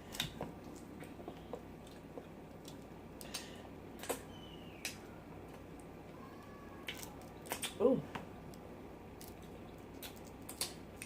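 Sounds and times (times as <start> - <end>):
crab shells cracking while eating: 6.8 - 7.8, 8.5 - 11.0.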